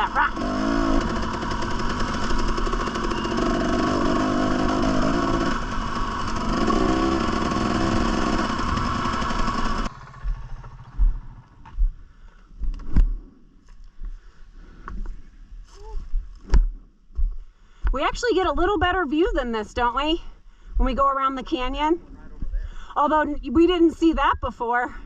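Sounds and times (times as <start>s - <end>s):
dirt bike engine revving: 0.0s - 11.8s.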